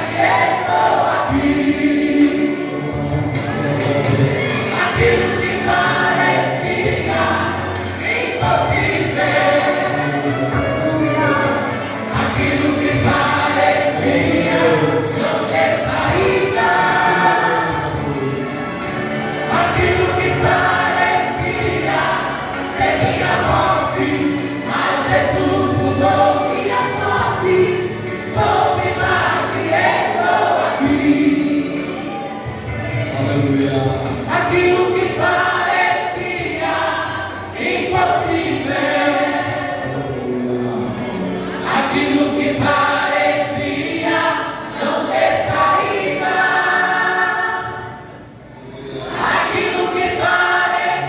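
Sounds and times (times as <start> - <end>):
gospel group singing: 0.0 - 51.0.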